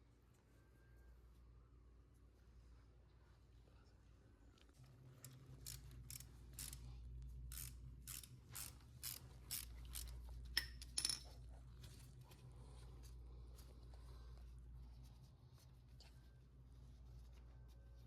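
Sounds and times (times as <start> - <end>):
socket ratchet clicking: 5.2 - 6.8, 7.5 - 11.2.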